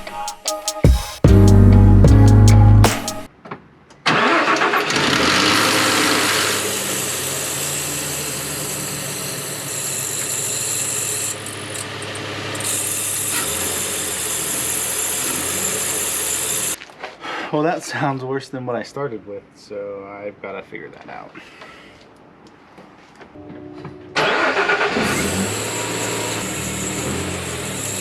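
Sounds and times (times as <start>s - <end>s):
car engine starting and idling: 4.1s - 10.4s, 24.2s - 28.0s
belt drive whine: 4.1s - 16.8s, 24.2s - 28.0s.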